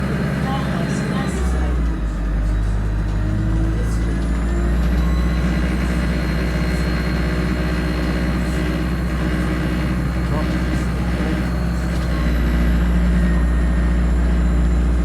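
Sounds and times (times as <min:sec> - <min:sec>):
bus engine droning: 0:00.0 - 0:15.0.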